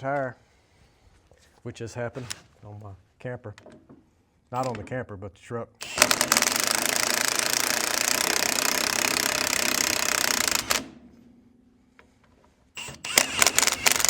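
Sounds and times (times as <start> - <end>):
impact wrench hammering: 5.8 - 11.2, 12.8 - 14.0.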